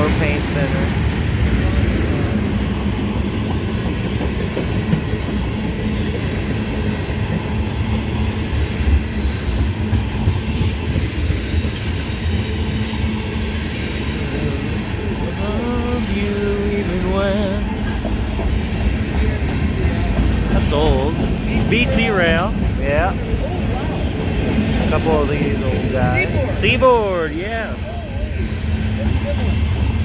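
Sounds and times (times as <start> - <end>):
train wheels rumbling on rail: 0.0 - 30.0
high wheel squeal: 11.2 - 15.1.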